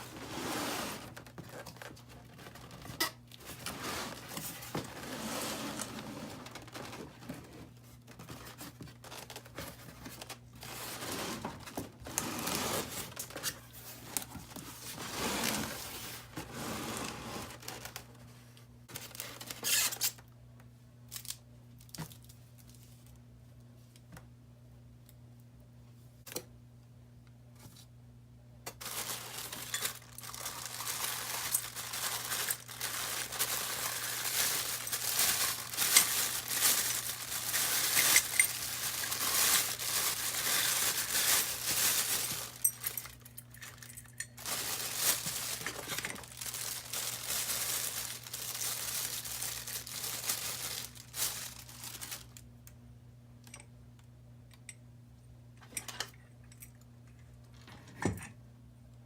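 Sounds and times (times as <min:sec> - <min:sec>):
packing material crinkling: 0:08.1 - 0:18.2, 0:18.9 - 0:20.2, 0:28.7 - 0:52.4.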